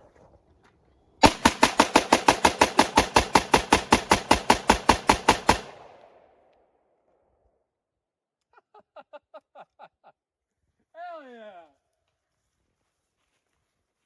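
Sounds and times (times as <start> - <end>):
rifle firing rapidly: 1.2 - 6.3.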